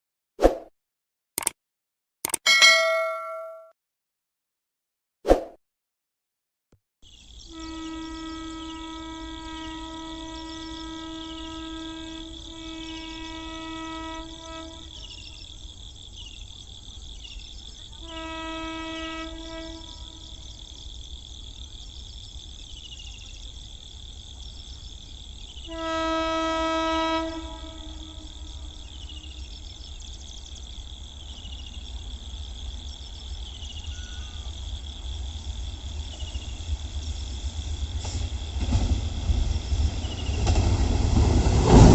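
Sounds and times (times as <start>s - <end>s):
locomotive horn blasts: 7.4s - 15.2s, 18.0s - 20.4s, 25.6s - 29.0s
train rumble: 27.2s - 41.9s.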